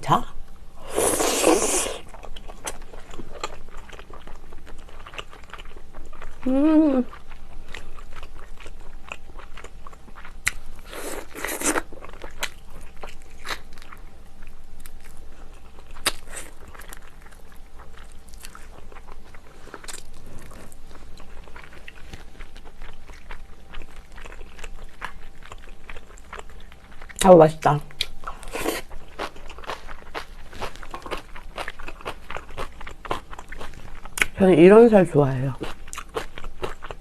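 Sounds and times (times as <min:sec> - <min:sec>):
wet chewing and lip-smacking: 0:27.9 - 0:34.4, 0:35.6 - 0:37.0.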